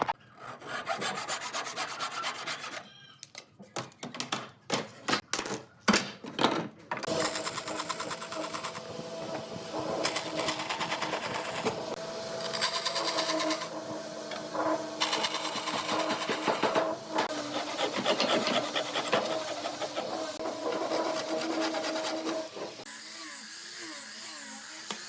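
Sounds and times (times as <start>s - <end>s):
motor hum: 7.1s - 23.2s
power tool buzzing on wood: 7.1s - 25.0s.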